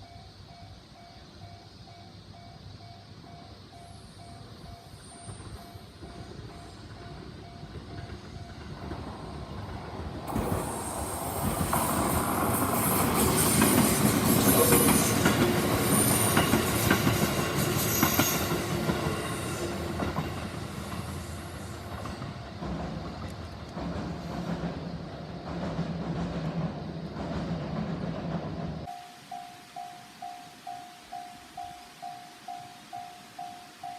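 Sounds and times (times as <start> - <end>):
level-crossing warning bell ringing: 0.0 - 9.0, 28.9 - 33.9
train wheels clattering over rail joints: 5.2 - 28.9.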